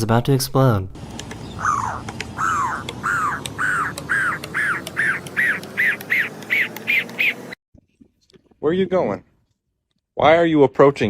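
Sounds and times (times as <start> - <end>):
bird squeaky calls: 1.4 - 7.6.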